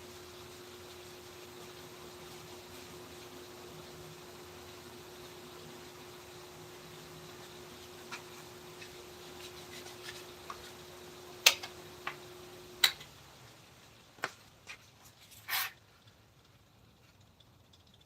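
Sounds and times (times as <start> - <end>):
faint steady hum: 0.0 - 18.0
short scrape: 15.1 - 15.8.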